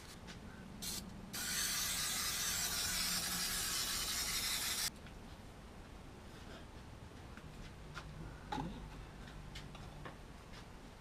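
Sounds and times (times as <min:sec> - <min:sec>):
aerosol can spraying hiss: 0:00.8 - 0:04.9.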